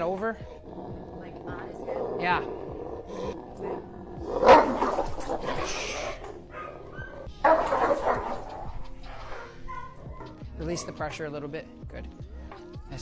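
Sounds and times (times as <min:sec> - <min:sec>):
dog barking angrily: 0:01.8 - 0:11.0.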